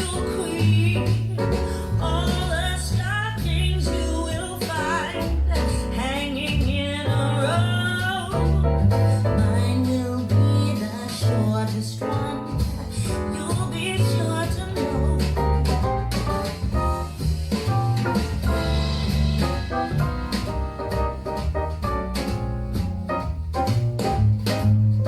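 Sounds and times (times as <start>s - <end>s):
steady bass line: 0.0s - 25.0s.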